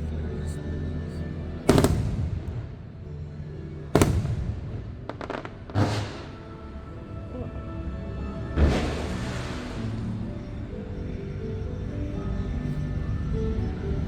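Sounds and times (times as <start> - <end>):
music: 0.0 - 14.0
fireworks booming: 1.7 - 2.8, 4.0 - 6.7
sharp fireworks pops: 1.7 - 2.8, 4.0 - 6.5.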